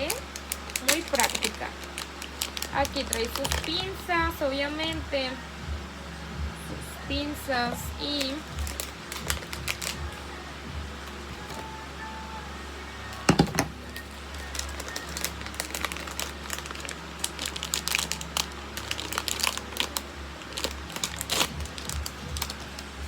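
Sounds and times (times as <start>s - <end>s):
plastic packaging crinkling: 0.0s - 5.0s, 8.0s - 10.2s, 11.0s - 11.8s, 13.1s - 23.0s
background music: 0.0s - 23.0s.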